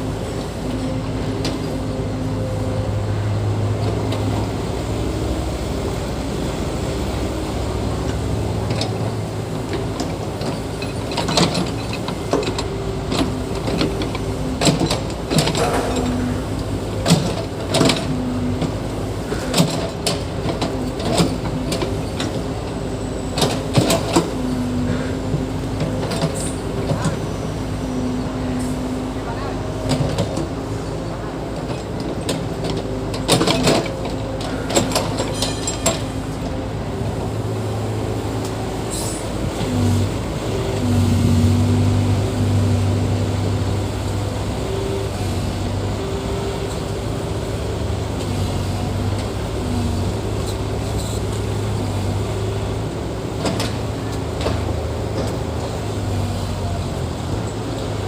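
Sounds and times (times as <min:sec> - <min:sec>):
diesel engine running: 0:00.0 - 0:58.0
sharp metallic clanks: 0:15.5 - 0:16.4, 0:34.8 - 0:36.2.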